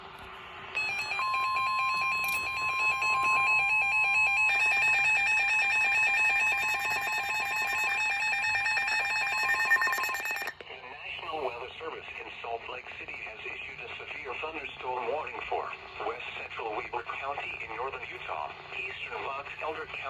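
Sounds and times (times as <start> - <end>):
higher steady tone: 0.8 - 10.5
steady beep tone: 0.8 - 10.5
warbling electronic alert tone: 0.8 - 10.5.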